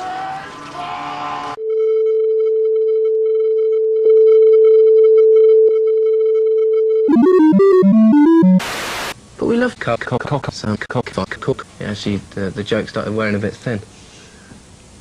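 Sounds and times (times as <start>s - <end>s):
electronic beep tone: 1.7s - 8.6s.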